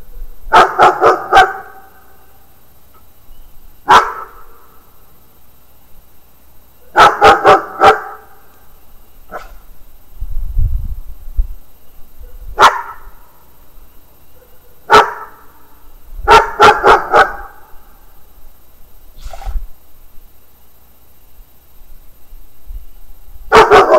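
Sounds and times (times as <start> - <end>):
dog barking: 0.5 - 2.0, 3.9 - 4.4, 6.8 - 8.4, 9.3 - 9.6, 12.2 - 13.0, 14.3 - 15.4, 16.3 - 17.6, 23.5 - 23.9.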